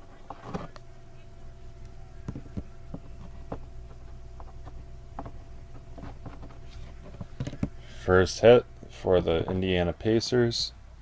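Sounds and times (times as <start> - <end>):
cards clicking and rustling: 2.3 - 7.8.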